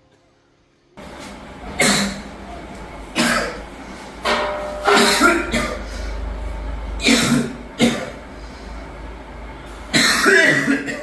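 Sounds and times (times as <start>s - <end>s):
person coughing: 3.2s - 3.6s, 4.8s - 5.9s, 7.0s - 8.2s, 10.0s - 11.0s.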